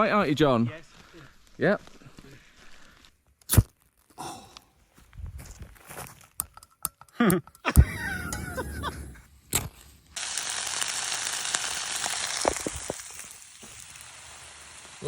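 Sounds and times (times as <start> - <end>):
camp stove hissing: 7.6 - 15.0.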